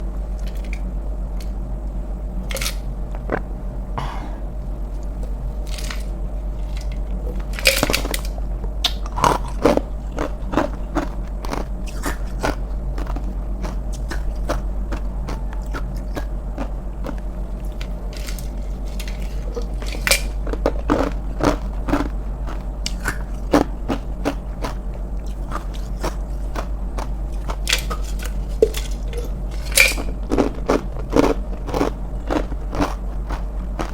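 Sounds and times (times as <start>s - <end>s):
steady low hum: 0.0s - 33.9s
ice cubes crunched by teeth: 9.0s - 16.3s.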